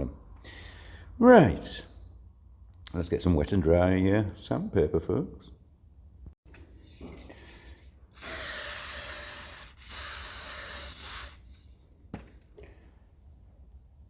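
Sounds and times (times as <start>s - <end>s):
aerosol spray bursts: 8.2s - 11.4s.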